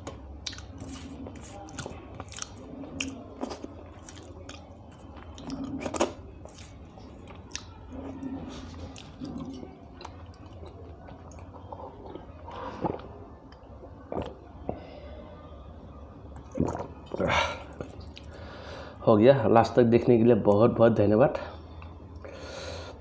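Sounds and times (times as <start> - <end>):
person chewing soft food: 0.0 - 14.9, 16.4 - 18.6.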